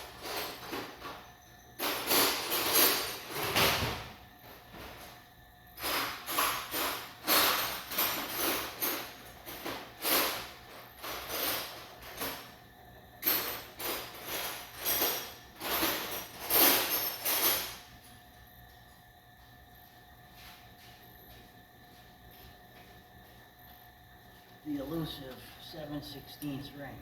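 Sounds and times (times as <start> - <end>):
metal tools rattling in drawer: 0.0 - 1.1, 1.8 - 3.6, 5.8 - 12.4, 13.2 - 17.8.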